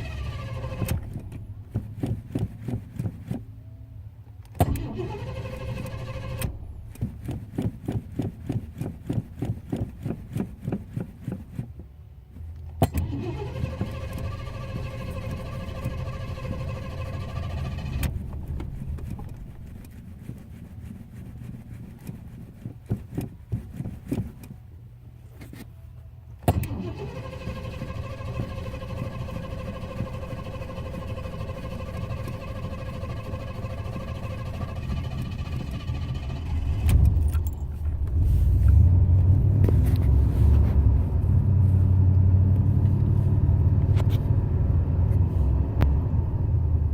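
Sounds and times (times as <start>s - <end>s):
car starter cranking: 0.0s - 3.4s, 4.4s - 7.7s, 12.8s - 20.0s, 26.4s - 40.1s
car engine idling: 0.0s - 3.5s, 13.0s - 21.3s, 26.7s - 42.0s.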